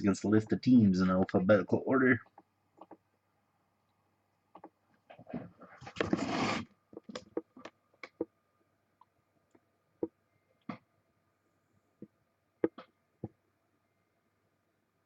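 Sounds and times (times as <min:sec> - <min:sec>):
sharp clicks and knocks: 0:12.0 - 0:13.4.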